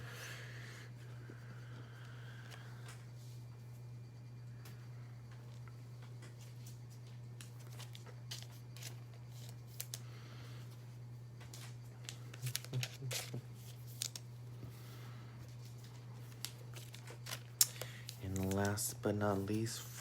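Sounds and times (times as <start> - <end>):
steady low hum: 0.0 - 20.0
cards and packaging handled: 7.4 - 10.0, 12.0 - 14.3, 15.6 - 19.8.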